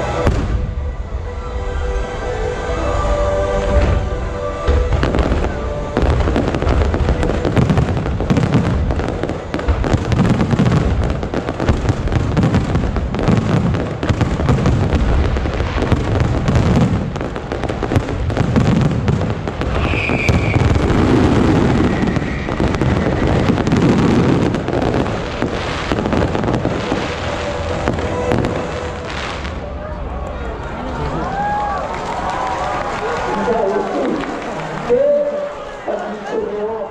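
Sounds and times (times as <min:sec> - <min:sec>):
fireworks booming and crackling: 0:00.0 - 0:01.0, 0:03.6 - 0:30.4
firework whistle: 0:19.6 - 0:29.6.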